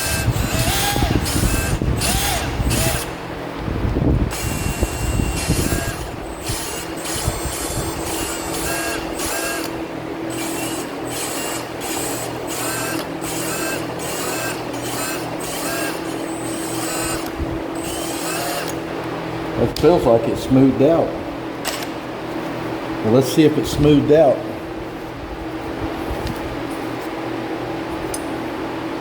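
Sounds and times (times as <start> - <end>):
electric drill hum: 0.0 - 3.2, 4.3 - 18.8
valve grinding scrape: 0.0 - 3.2, 4.3 - 18.8.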